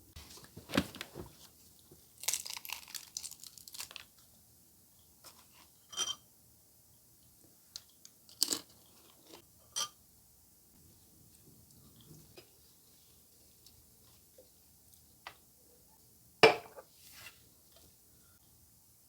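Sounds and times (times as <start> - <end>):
crisp crunching and crackling: 2.2 - 4.2.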